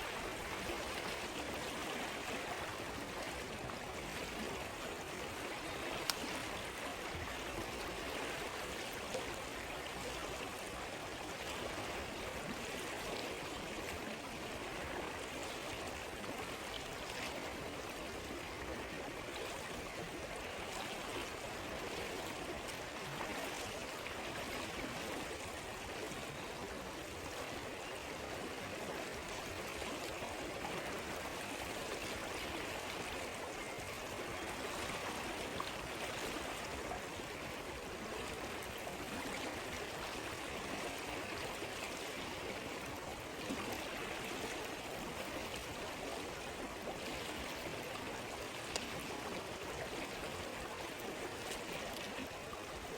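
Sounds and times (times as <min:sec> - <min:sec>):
river flowing over stones: 0:00.0 - 0:52.9
faint clicks: 0:06.0 - 0:06.5, 0:48.7 - 0:49.0.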